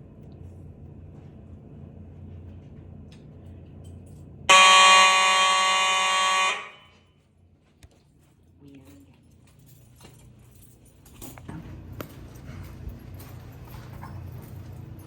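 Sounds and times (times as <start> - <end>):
fire alarm horn blast: 4.5 - 7.1.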